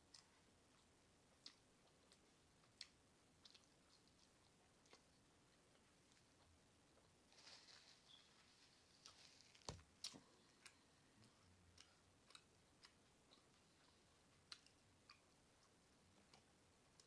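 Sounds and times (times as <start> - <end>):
wet mouth clicks chewing: 0.1 - 6.3, 10.0 - 17.0.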